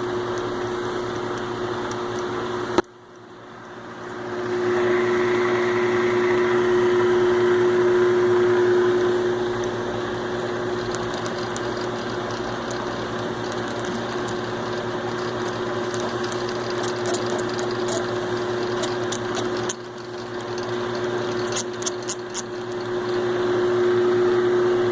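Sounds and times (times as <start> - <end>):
metal lathe humming: 3.6 - 24.9
sharp clicks: 10.1 - 23.0.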